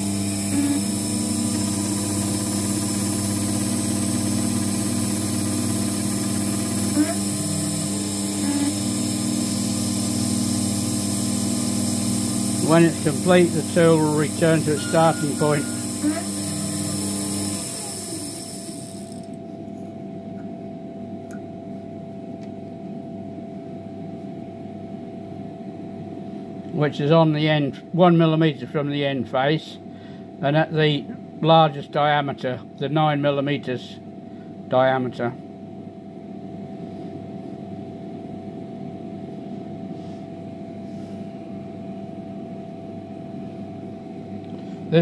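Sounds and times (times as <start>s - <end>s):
lathe motors humming: 0.0s - 19.4s.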